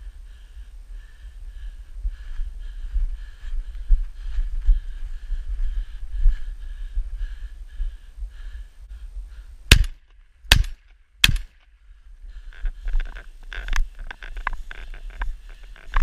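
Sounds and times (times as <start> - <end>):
wind buffeting microphone: 0.0 - 9.8
shotgun shots: 9.7 - 11.6.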